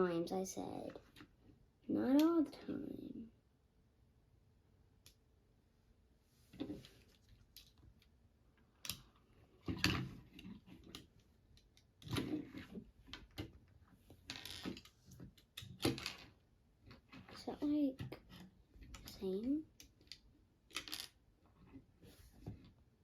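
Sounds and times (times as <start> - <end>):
plastic bricks clicking together: 19.8 - 21.2.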